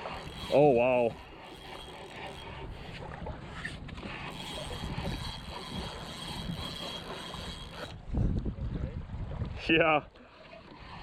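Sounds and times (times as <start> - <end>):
water washing on shoreline: 0.0 - 8.2
wind buffeting microphone: 0.0 - 10.0.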